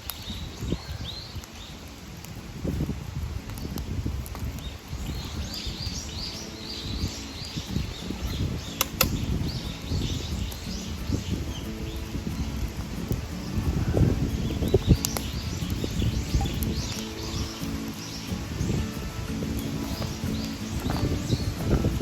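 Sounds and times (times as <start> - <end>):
bird chirping: 4.6 - 22.0.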